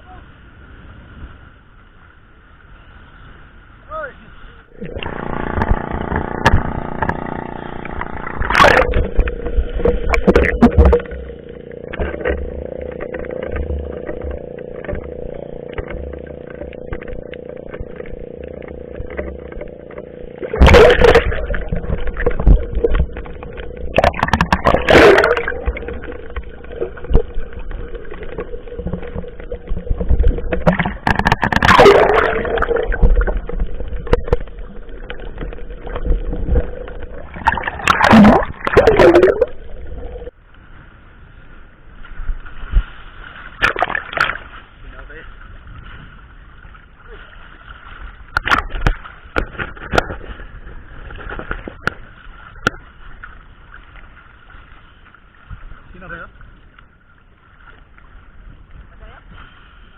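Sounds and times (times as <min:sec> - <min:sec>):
boat engine running: 0:04.6 - 0:40.4.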